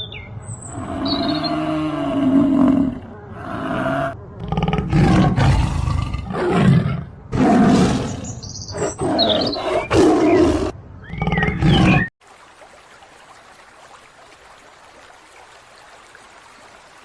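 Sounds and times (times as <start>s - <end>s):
large animal roaring: 0.7s - 12.1s.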